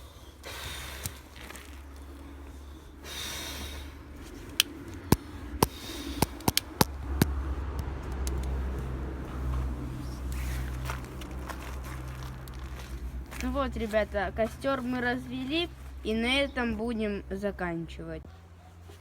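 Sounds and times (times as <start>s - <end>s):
low steady rumble: 0.0s - 19.0s
campfire crackling and popping: 4.5s - 8.9s.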